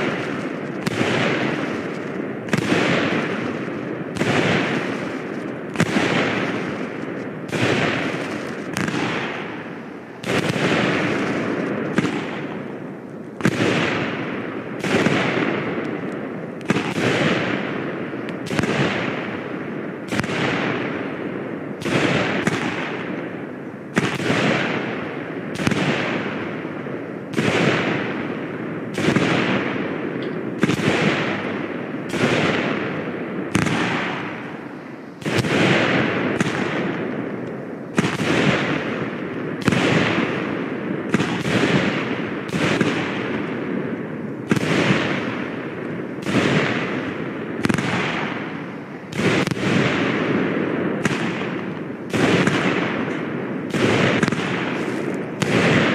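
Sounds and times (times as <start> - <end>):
fireworks bangs: 0.0 - 55.9.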